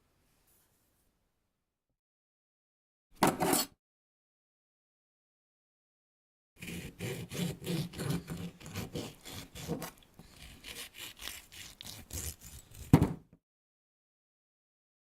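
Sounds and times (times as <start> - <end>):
scraping strokes on lemon: 6.6 - 12.9.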